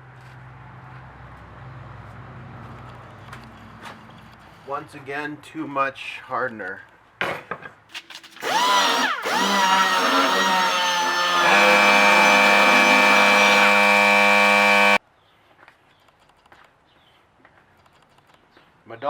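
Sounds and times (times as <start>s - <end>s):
power tool motor whine: 8.4s - 15.0s.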